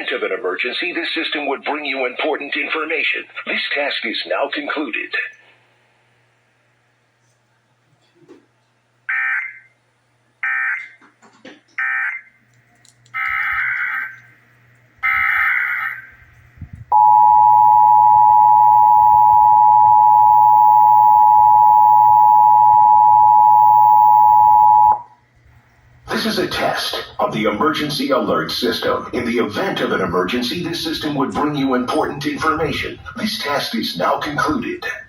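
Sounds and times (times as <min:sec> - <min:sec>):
two-tone attention signal: 0:16.9 - 0:25.1.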